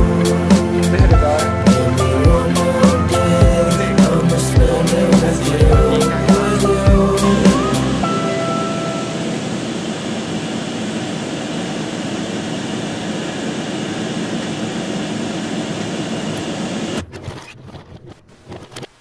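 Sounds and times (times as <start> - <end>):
steady rushing drone: 0.0 - 16.0.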